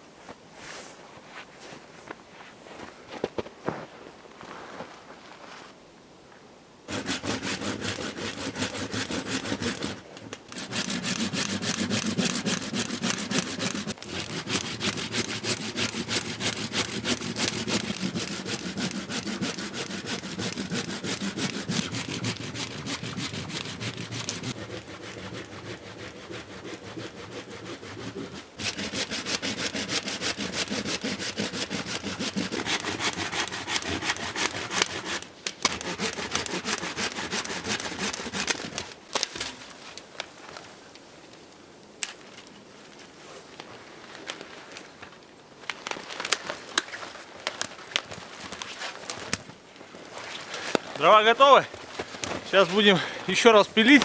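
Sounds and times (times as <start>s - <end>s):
hand saw cutting branches: 6.9s - 39.9s, 46.1s - 54.0s.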